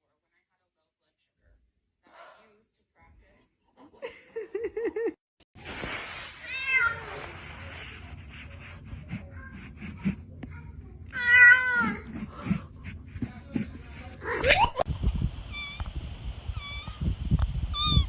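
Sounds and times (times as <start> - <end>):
cat meowing: 6.4 - 7.3, 11.1 - 12.3, 15.5 - 15.9, 16.5 - 17.0, 17.7 - 18.0.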